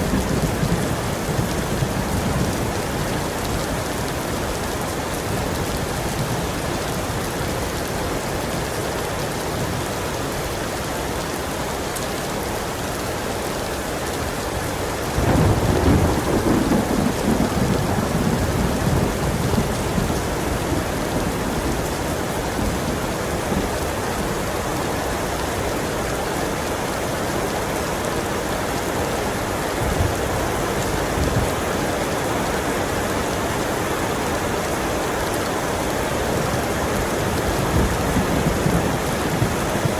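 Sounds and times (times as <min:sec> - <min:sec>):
heavy rain falling: 0:00.0 - 0:39.9
thunder rumbling: 0:15.1 - 0:23.9, 0:36.3 - 0:39.9.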